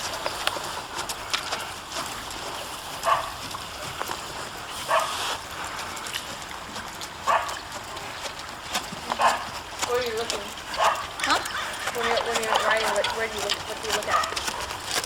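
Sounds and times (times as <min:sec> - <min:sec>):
dog barking: 0:03.0 - 0:03.4, 0:04.9 - 0:05.2, 0:07.3 - 0:07.6, 0:09.2 - 0:09.5, 0:10.8 - 0:13.3, 0:14.0 - 0:14.4.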